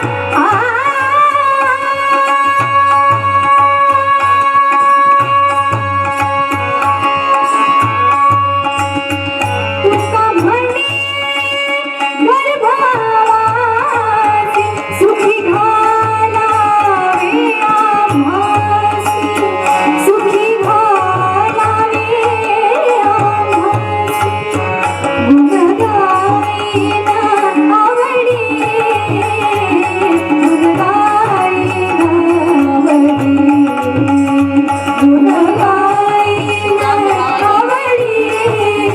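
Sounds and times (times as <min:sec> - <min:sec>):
woman singing devotional song: 0:00.0 - 0:38.9
hand drum rhythm: 0:28.2 - 0:38.9.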